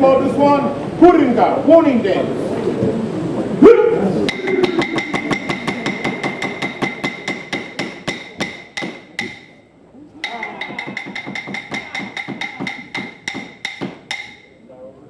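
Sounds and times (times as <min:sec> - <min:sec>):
wooden clapsticks beating: 0:04.3 - 0:09.6, 0:10.2 - 0:14.5.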